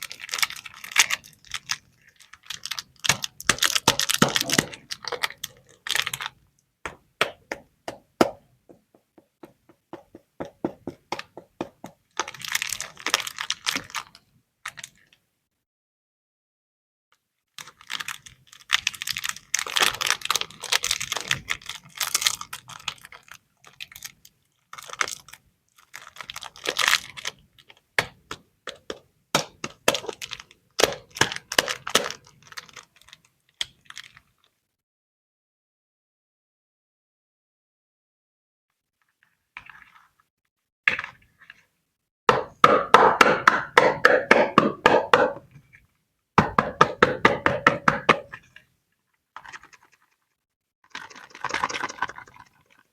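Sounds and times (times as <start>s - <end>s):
wrappers crinkling: 0.0s - 6.4s, 12.0s - 15.2s, 17.6s - 27.8s, 28.7s - 34.6s, 49.4s - 52.8s.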